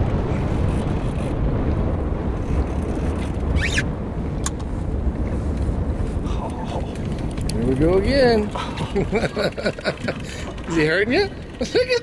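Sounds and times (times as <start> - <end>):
boat engine rumble: 0.0 - 12.0
wind: 0.0 - 12.0
high squeal: 3.6 - 3.9.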